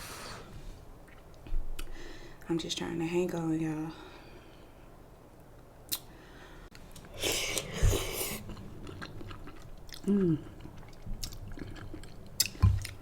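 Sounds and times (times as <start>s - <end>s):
wet chewing and biting: 6.9s - 13.0s.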